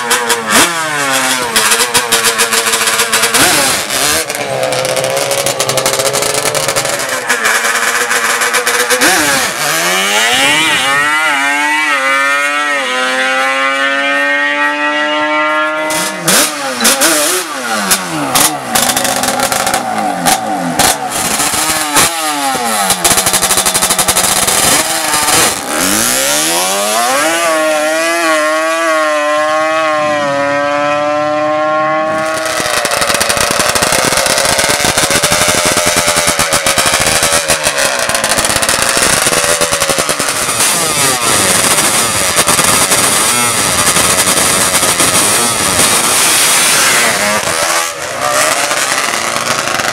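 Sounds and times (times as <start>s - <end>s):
racing engines at full throttle: 0.0s - 49.9s
sharp pops: 32.3s - 40.8s.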